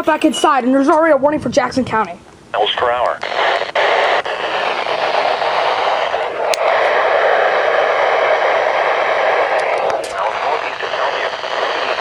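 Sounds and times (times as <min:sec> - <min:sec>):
radio static hiss: 0:02.5 - 0:12.0
sharp click: 0:06.5 - 0:06.7.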